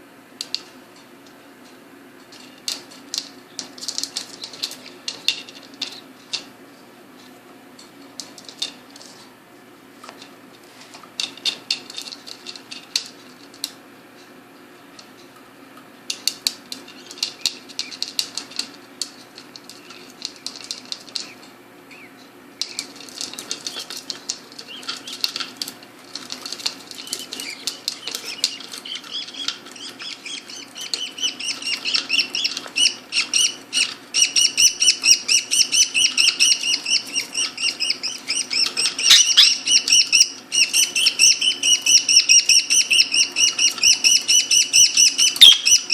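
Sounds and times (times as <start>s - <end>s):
sharp clicks and rustles: 0.4s - 6.5s, 14.9s - 21.6s, 22.2s - 34.0s
budgerigars chirping: 21.9s - 22.1s, 27.0s - 45.9s.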